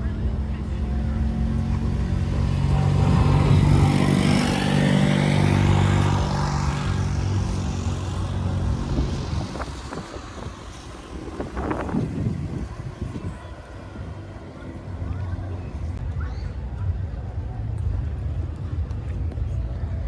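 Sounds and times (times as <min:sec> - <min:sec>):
engine passing by: 0:00.0 - 0:16.0.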